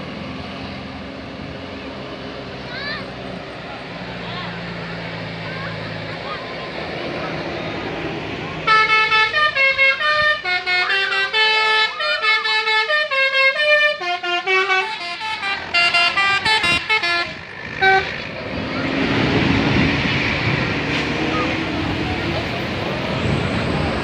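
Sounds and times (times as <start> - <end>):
bus engine: 0.0 - 24.0
street noise: 0.0 - 24.0
bus musical horn melody: 8.6 - 18.4.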